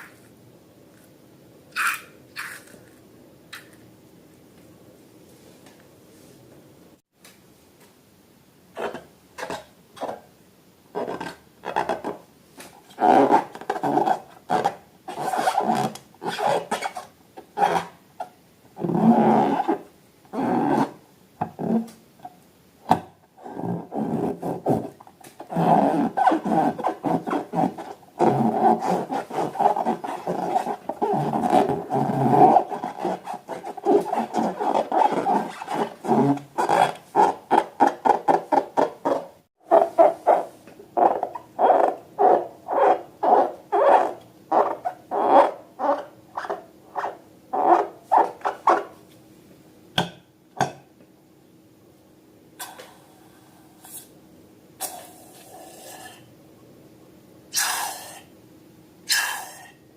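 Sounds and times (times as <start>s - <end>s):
rubber balloons squeaking: 12.9s - 18.0s, 18.8s - 21.0s, 23.4s - 48.9s.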